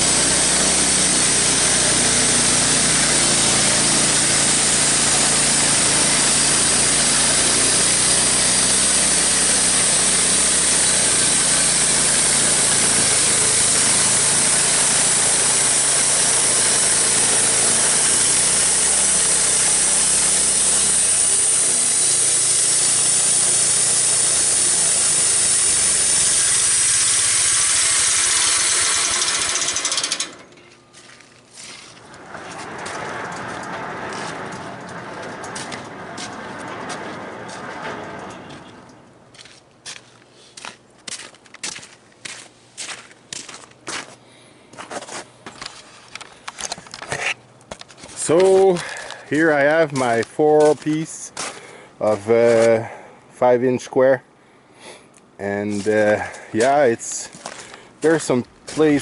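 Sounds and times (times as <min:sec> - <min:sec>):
bandsaw mill sawing a log: 0:00.0 - 0:30.6, 0:31.6 - 0:39.0, 0:48.2 - 0:53.0, 0:55.4 - 0:59.0.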